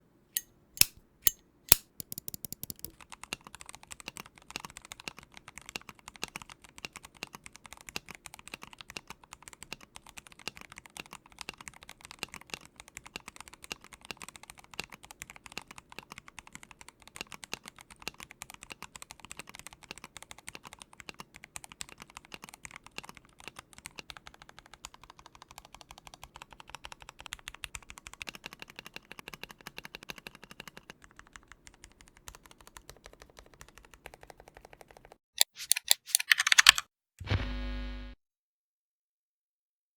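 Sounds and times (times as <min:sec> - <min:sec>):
sharp clicks: 0:00.4 - 0:03.0, 0:35.4 - 0:37.4
fast typing on mechanical keyboard: 0:01.7 - 0:36.8.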